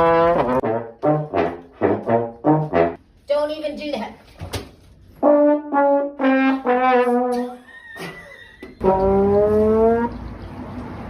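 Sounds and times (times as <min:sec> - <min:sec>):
trombone sliding notes: 0:00.0 - 0:03.0, 0:05.2 - 0:07.6, 0:08.8 - 0:10.2.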